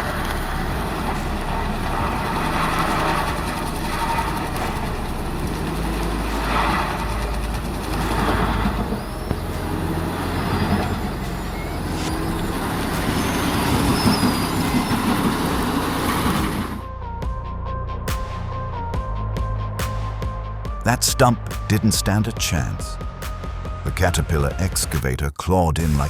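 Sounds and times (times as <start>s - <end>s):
heavy diesel machinery engine drone: 0.0s - 17.0s.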